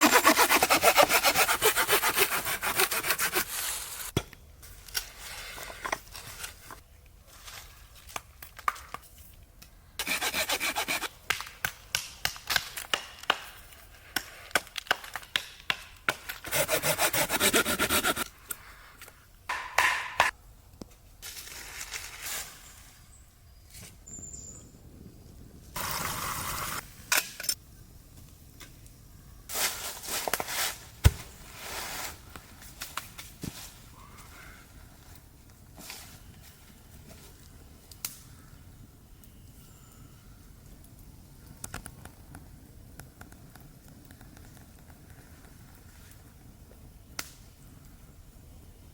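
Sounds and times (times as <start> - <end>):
hand saw cutting wood: 0.0 - 4.1, 10.0 - 11.1, 16.4 - 18.3.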